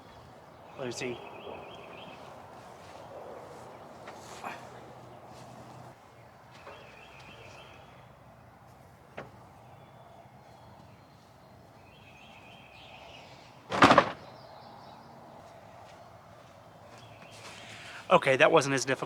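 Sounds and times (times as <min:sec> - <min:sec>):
van door slamming: 0:13.7 - 0:14.4.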